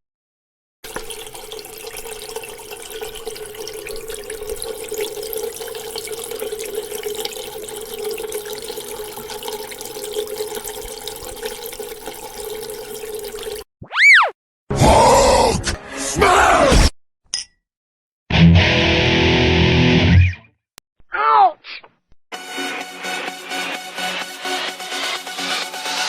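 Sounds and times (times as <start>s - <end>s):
tap water running into sink: 0.8s - 13.7s.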